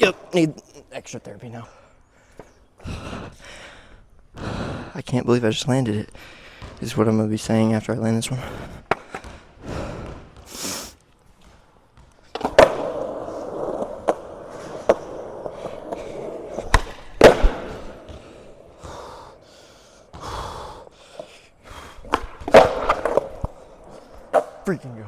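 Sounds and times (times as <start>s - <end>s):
skateboard wheels rolling on concrete: 0.0s - 25.0s
skateboard clacking on ground: 8.9s - 9.3s, 12.2s - 20.2s, 20.8s - 24.9s.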